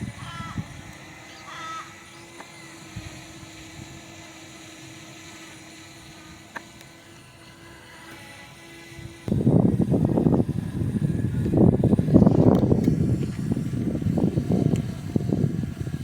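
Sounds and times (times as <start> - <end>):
drone propellers humming: 0.0 - 16.0
magpie harsh call: 0.2 - 0.7, 1.3 - 2.2.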